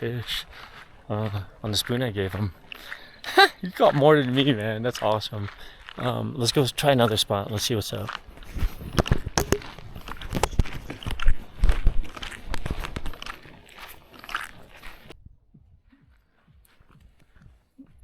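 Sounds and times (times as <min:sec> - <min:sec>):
crunching and knocking: 0:08.1 - 0:15.2.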